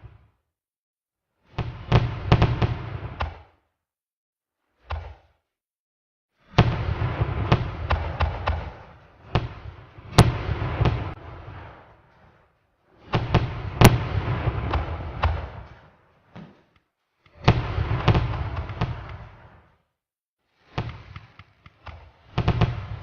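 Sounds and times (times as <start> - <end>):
low rumble of fireworks: 1.4 - 3.7, 6.4 - 19.9, 20.5 - 23.0
fireworks bangs: 1.6 - 3.6, 6.5 - 19.8, 20.6 - 23.0.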